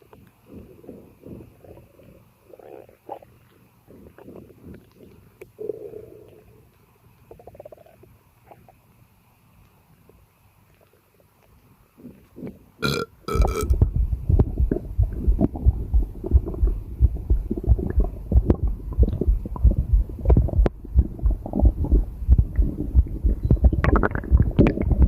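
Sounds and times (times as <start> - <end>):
stomach gurgling: 0.0 - 8.9, 10.7 - 25.0.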